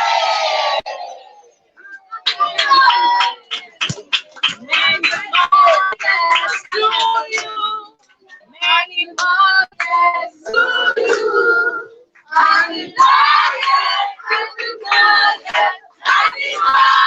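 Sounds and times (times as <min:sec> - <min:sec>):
voices singing short phrases: 0:09.8 - 0:17.0.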